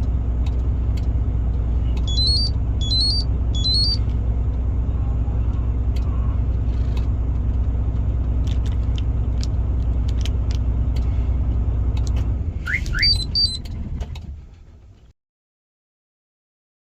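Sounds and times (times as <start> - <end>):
diesel truck engine idling: 0.0 - 15.1
short high beeps: 2.0 - 4.0
rising alarm chirps: 2.0 - 4.1, 12.7 - 13.6.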